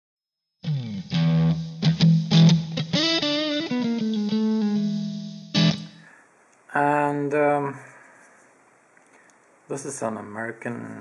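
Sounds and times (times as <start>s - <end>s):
guitar chords and single notes: 0.6s - 6.2s.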